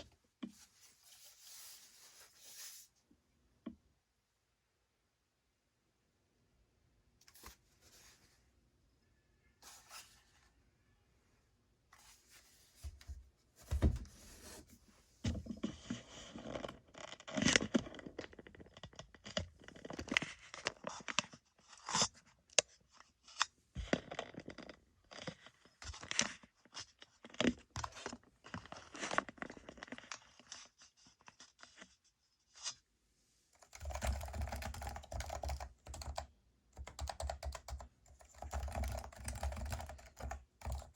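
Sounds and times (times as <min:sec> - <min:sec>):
keyboard typing: 0:33.6 - 0:40.9.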